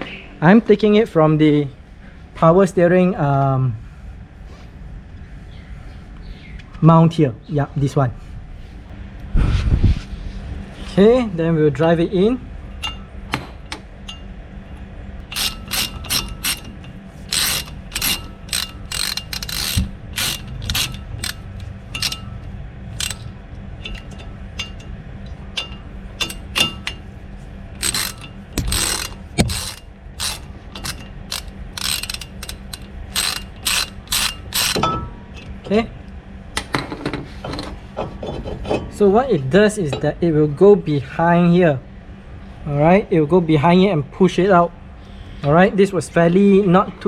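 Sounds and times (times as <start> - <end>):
hand ratchet clicking: 15.2 - 24.8, 25.6 - 27.0, 27.8 - 34.9.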